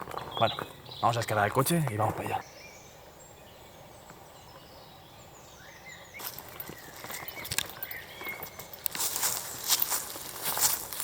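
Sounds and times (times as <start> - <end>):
small birds chirping: 0.0 - 11.0
crunching footsteps: 6.2 - 11.0
rustling: 8.4 - 11.0.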